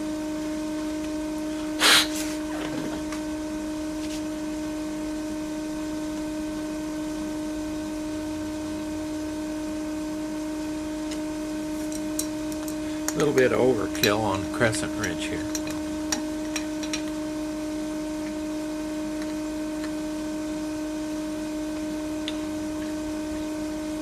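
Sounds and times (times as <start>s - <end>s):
steady electrical hum: 0.0s - 24.0s
short sharp hiss: 1.8s - 2.4s.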